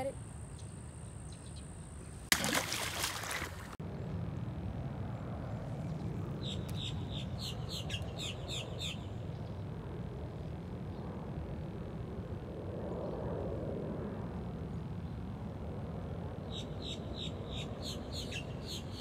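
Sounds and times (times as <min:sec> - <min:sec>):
bird chirping: 0:00.1 - 0:02.3, 0:06.4 - 0:09.5, 0:16.5 - 0:19.0
fish splashing into water: 0:02.3 - 0:03.8.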